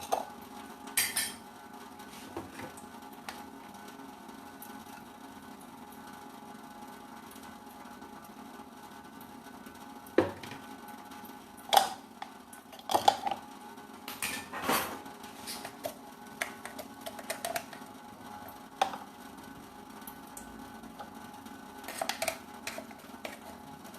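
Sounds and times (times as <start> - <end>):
faint steady hum: 0.0 - 23.9.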